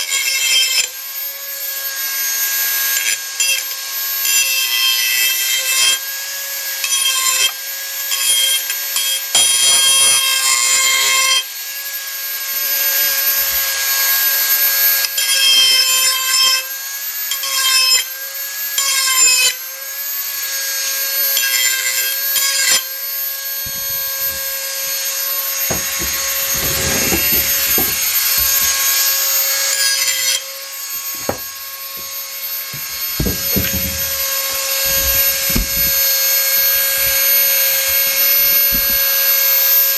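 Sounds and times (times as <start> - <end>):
rotary tool grinding steel: 20.8 - 37.2.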